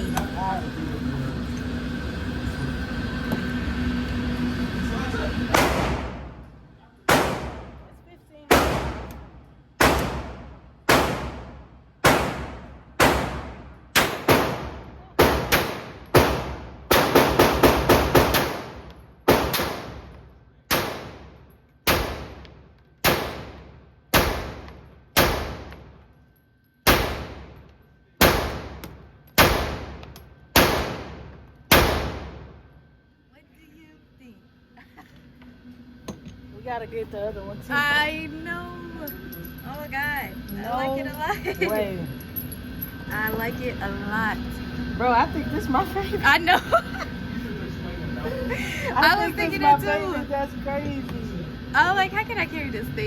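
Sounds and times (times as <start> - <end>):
pistol shots with long echo: 7.1 - 7.7, 9.8 - 20.1, 20.7 - 21.3, 21.9 - 22.4, 23.0 - 25.8, 26.8 - 27.6, 28.2 - 28.8, 29.4 - 32.5.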